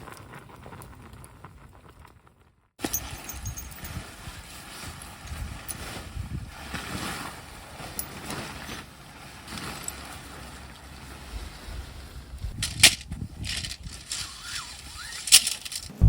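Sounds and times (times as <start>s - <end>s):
wind gusting against microphone: 5.2s - 6.7s, 11.3s - 16.0s.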